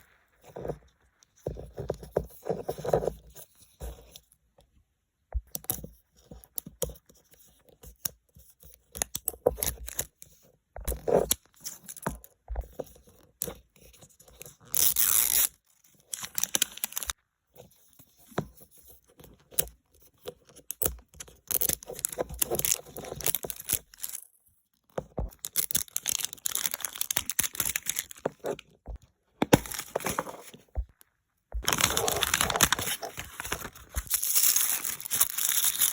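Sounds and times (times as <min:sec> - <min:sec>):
packaging tearing and crinkling: 0:14.8 - 0:15.5, 0:16.2 - 0:17.1, 0:25.4 - 0:28.2, 0:29.6 - 0:30.5, 0:31.6 - 0:35.9.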